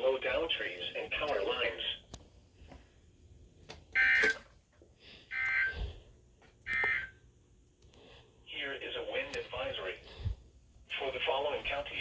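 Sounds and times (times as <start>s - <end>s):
phone alert tone beeping: 4.0s - 4.4s, 5.3s - 5.8s, 6.7s - 7.2s.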